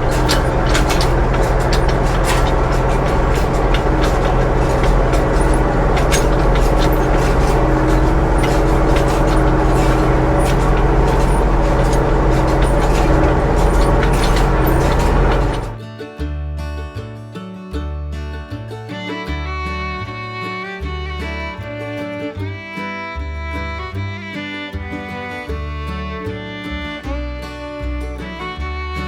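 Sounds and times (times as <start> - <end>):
clicks and rattles: 0.0 - 15.8
tractor engine running: 0.0 - 15.8.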